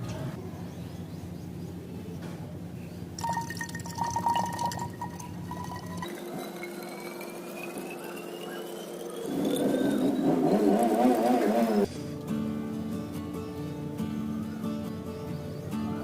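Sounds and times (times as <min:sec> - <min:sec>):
water pouring into container: 0:03.2 - 0:11.9.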